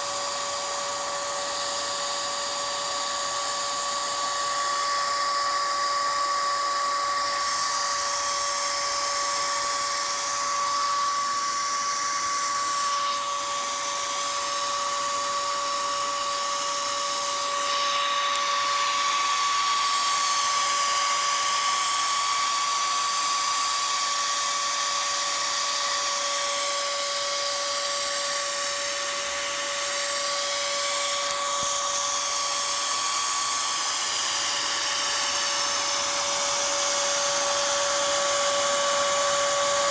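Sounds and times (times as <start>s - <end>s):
computer fan whining: 0.0s - 39.9s.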